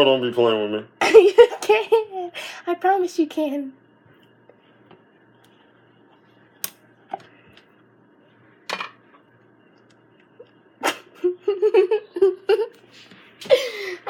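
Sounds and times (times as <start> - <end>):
person laughing: 1.0 - 2.3, 10.8 - 12.8.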